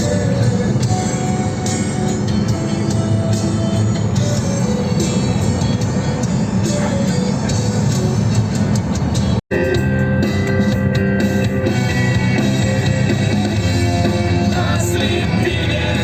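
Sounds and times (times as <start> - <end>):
rock music: 0.0 - 16.0.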